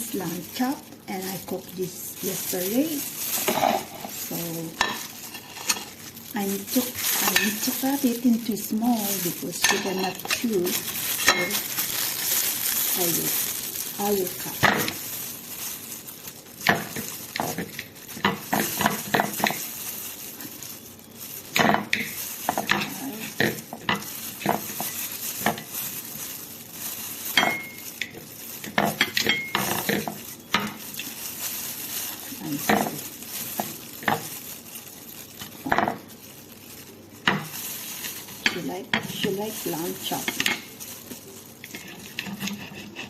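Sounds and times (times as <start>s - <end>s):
cutlery scraping a dish: 41.7s - 43.0s.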